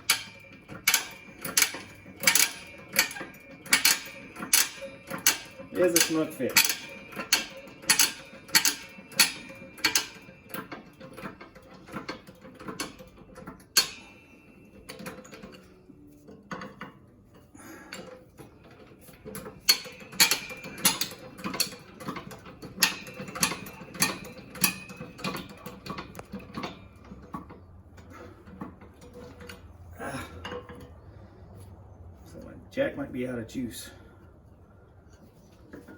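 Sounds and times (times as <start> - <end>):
hydraulic jack pump clicking: 0.0 - 14.2, 17.9 - 29.7.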